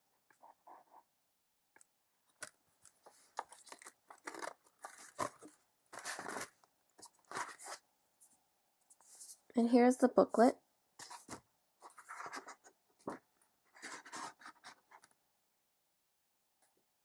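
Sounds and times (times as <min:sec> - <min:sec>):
plastic case rustles and clicks: 0:02.3 - 0:07.8.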